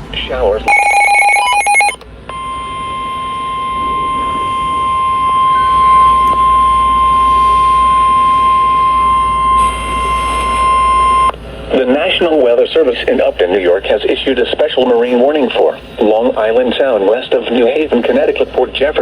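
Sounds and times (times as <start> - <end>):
high-pitched alarm tone: 0.6 - 11.4.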